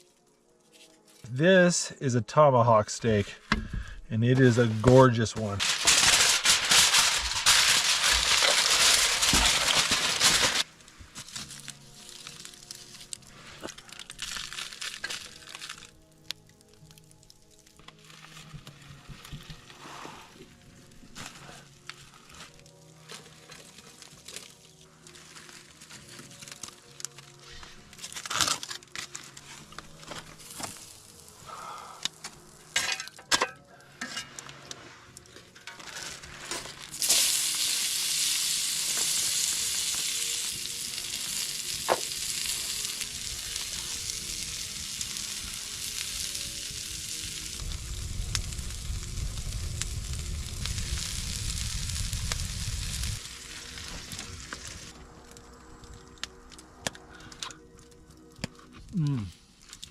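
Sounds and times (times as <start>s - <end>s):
steak sizzling in a pan: 5.8s - 10.7s, 36.9s - 54.9s.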